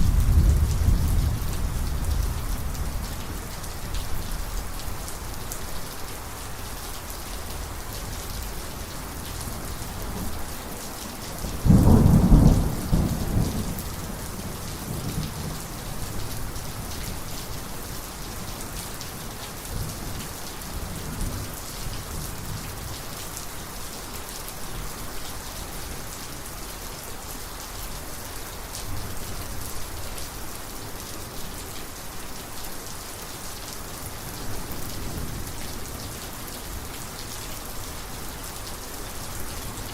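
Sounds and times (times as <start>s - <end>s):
thunder rumbling: 0.0s - 3.2s, 11.6s - 13.9s
steady rain: 0.0s - 39.9s.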